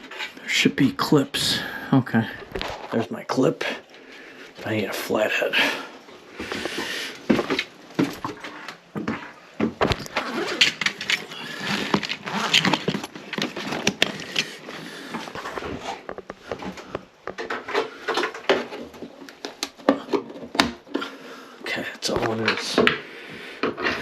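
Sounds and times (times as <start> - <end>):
hand tools clicking and scraping: 9.9 - 21.2.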